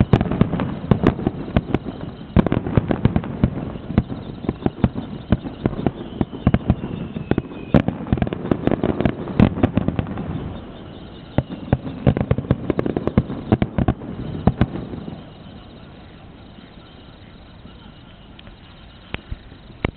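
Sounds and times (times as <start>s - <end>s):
fireworks bangs and crackling: 0.0s - 19.9s
falling whistle: 3.7s - 7.9s, 10.2s - 12.2s.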